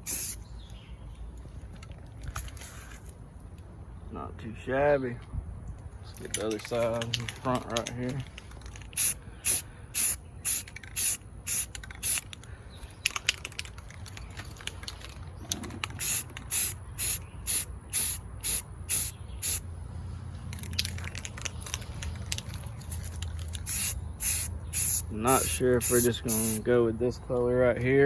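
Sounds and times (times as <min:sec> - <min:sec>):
spray paint can bursts: 0:00.0 - 0:00.4, 0:08.9 - 0:12.4, 0:15.8 - 0:19.6, 0:23.5 - 0:26.7.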